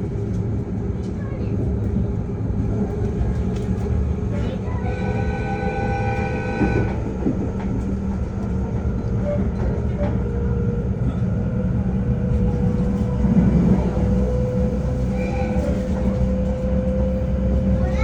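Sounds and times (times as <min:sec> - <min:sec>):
train rumbling past: 0:00.0 - 0:18.0
train horn blast: 0:04.6 - 0:07.3, 0:14.2 - 0:16.6.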